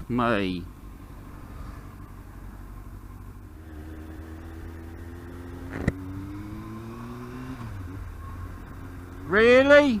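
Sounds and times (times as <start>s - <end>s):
motorcycle engine accelerating: 3.4s - 9.7s.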